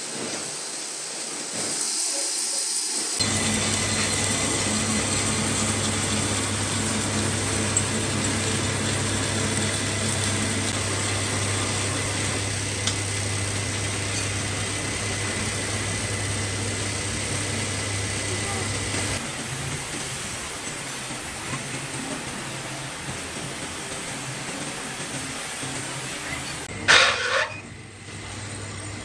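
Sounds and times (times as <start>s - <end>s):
metal lathe running: 2.3s - 29.0s.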